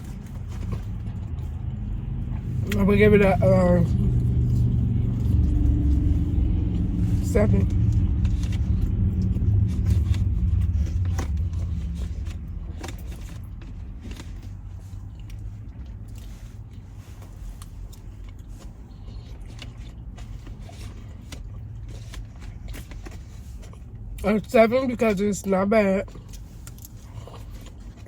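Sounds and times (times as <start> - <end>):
low vehicle rumble: 0.0 - 28.0.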